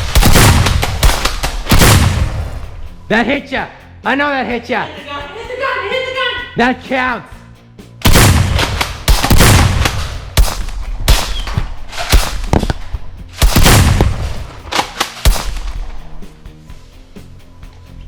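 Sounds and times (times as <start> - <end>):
loud gunshot-like blasts: 0.0 - 2.7, 8.0 - 12.8, 13.4 - 14.6, 15.2 - 15.8
background music: 0.0 - 18.0.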